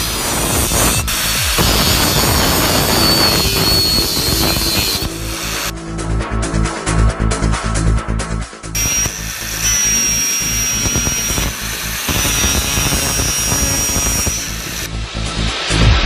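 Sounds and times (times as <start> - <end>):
power sander whining and grinding: 0.0 - 5.7, 8.8 - 14.9
electronic music: 0.0 - 16.0.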